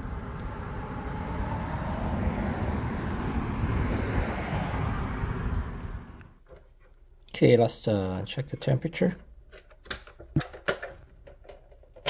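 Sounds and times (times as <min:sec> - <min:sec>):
low rumble: 0:00.0 - 0:06.4.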